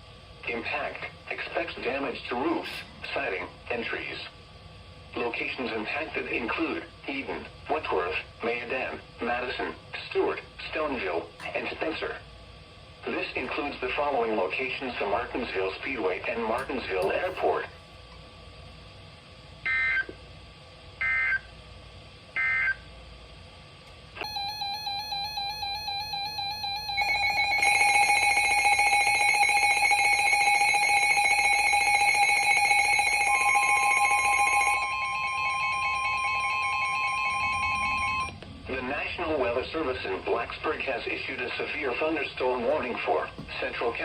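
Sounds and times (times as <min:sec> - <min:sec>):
pulsing electronic alarm beeps: 0:21.0 - 0:21.5, 0:22.4 - 0:22.9, 0:24.2 - 0:38.4
digital data tones: 0:24.2 - 0:38.4
steady warning tone: 0:24.2 - 0:44.0.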